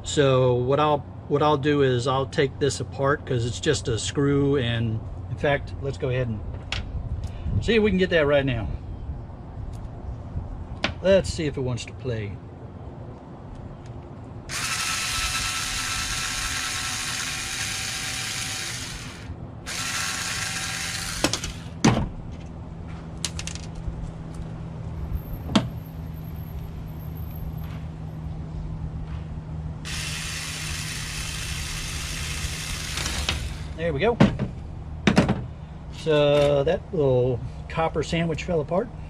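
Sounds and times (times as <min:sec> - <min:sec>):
power screwdriver running: 0:14.5 - 0:21.8, 0:29.9 - 0:33.8.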